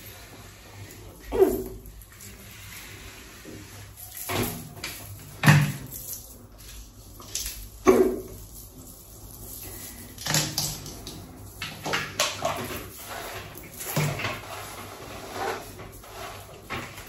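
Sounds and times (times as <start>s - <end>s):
person hiccuping: 7.8s - 8.3s.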